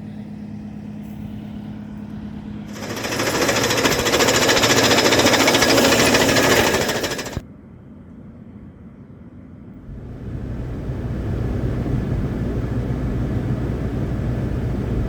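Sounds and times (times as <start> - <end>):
rapid mechanical pulsing: 2.6 - 7.4.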